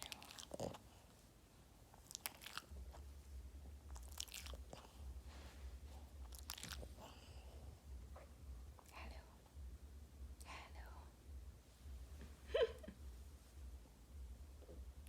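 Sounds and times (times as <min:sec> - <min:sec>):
dog chewing and crunching: 0:00.0 - 0:01.0, 0:02.0 - 0:03.0, 0:03.9 - 0:05.0, 0:06.2 - 0:07.2
faint low hum: 0:00.0 - 0:15.0.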